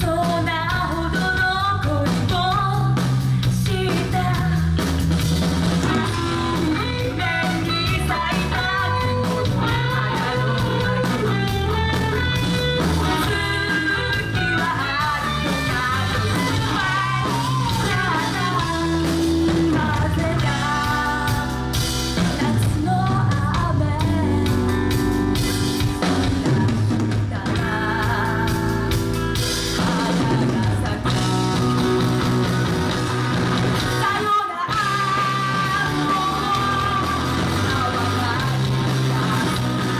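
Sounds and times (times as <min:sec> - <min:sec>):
live rock band playing: 0:00.0 - 0:39.9
person singing: 0:05.9 - 0:25.0, 0:26.0 - 0:29.2, 0:33.8 - 0:39.9.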